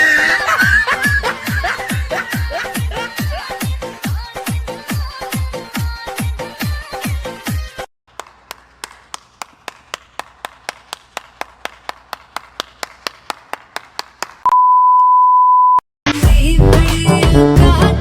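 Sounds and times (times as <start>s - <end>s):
loud steady beep tone: 14.5s - 15.8s.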